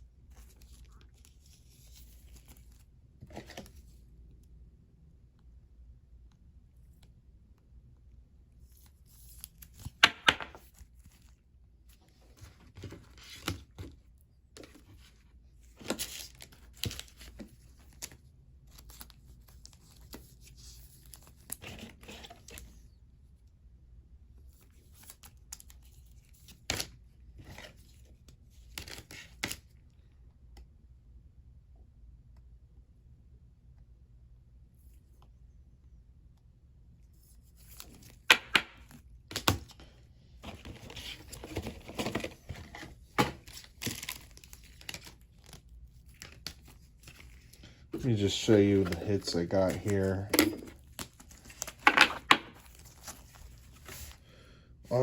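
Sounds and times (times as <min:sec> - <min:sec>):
plastic foil wrappers crinkling: 0:43.5 - 0:54.1.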